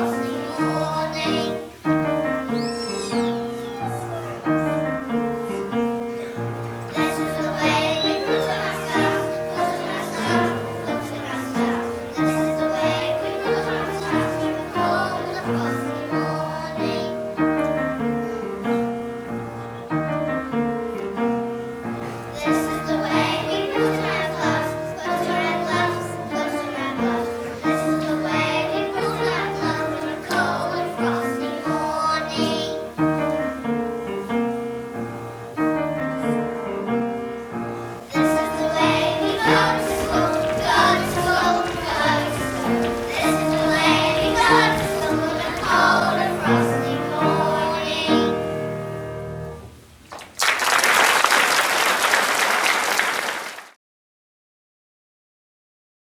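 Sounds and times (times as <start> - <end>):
children singing: 0.0 - 18.8, 22.2 - 33.4, 38.1 - 48.7
recorded backing music: 0.0 - 50.0
clapping noise: 39.3 - 45.9, 50.1 - 53.8.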